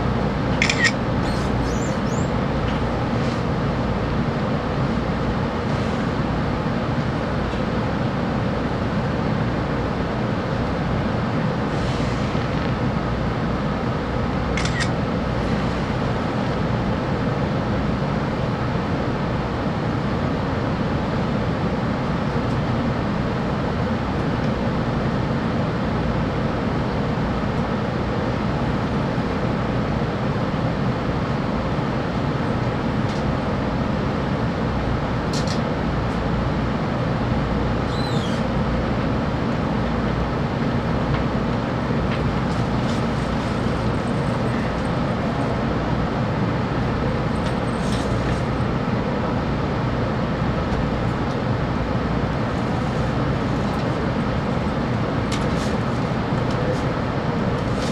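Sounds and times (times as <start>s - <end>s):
train running at speed: 0.0s - 57.9s
faint high squeaks: 0.7s - 2.3s, 37.9s - 38.5s.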